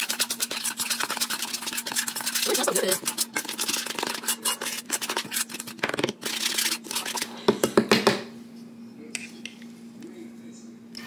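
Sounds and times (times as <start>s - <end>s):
utensil scraping bowl: 0.0s - 7.4s.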